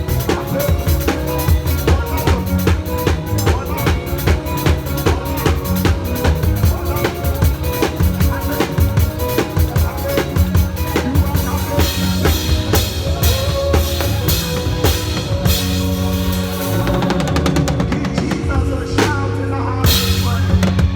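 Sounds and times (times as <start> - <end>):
drum kit groove: 0.0 - 20.9.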